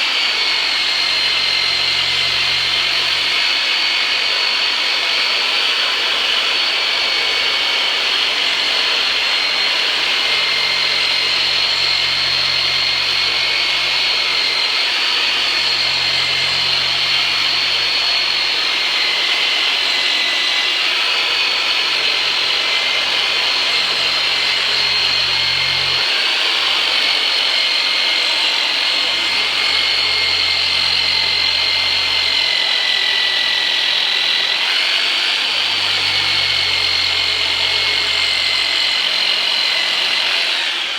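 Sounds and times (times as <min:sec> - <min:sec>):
massage device whining: 0:00.0 - 0:40.9.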